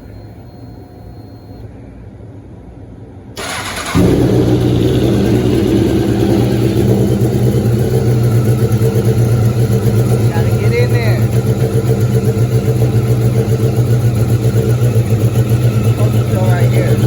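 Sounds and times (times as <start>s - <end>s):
electric starter cranking: 3.4s - 17.0s
motorcycle engine idling: 3.4s - 17.0s.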